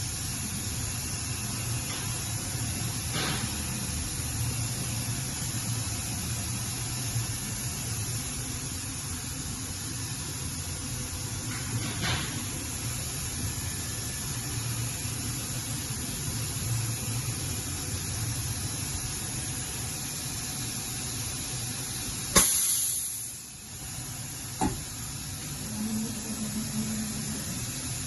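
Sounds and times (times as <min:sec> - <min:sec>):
shop machinery humming: 0:00.0 - 0:28.0
brief hiss: 0:22.4 - 0:23.3.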